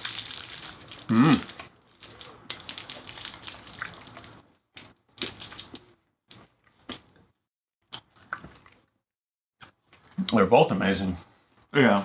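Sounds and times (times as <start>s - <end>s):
wrappers crackling: 0.0s - 4.4s, 5.2s - 5.8s.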